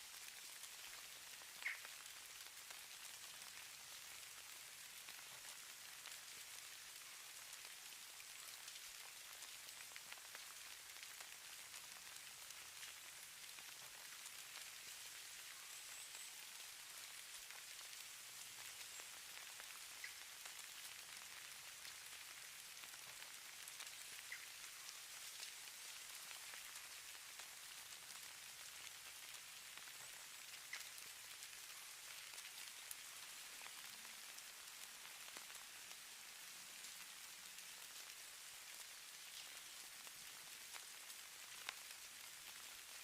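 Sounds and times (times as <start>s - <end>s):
snow pattering hiss: 0.0s - 43.0s
tiny ticks: 1.5s - 2.7s, 22.8s - 27.1s, 29.8s - 31.5s.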